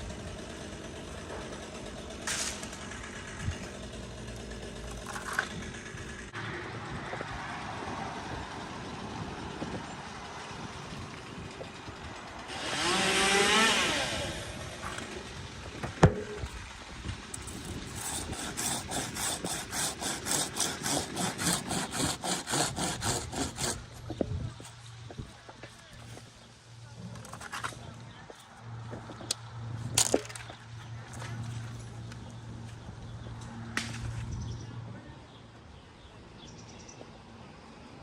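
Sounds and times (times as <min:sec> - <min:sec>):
saw cutting wood: 0:00.0 - 0:06.4, 0:11.4 - 0:15.3, 0:17.3 - 0:24.8
small engine revving: 0:00.0 - 0:15.4, 0:17.3 - 0:24.2.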